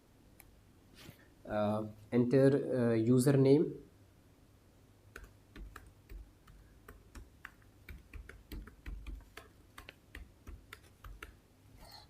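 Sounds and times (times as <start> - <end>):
computer keyboard typing: 5.1 - 11.4.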